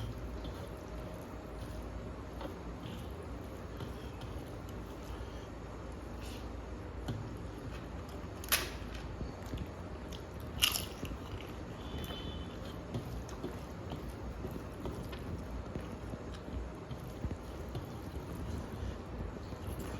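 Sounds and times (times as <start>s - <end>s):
chewing: 0.0s - 5.4s, 9.4s - 19.9s.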